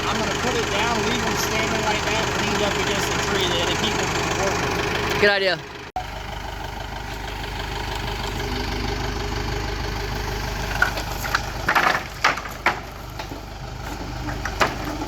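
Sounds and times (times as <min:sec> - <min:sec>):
tractor engine idling: 0:00.0 - 0:15.0
sharp knocks and clanks: 0:10.7 - 0:13.4, 0:14.0 - 0:15.0.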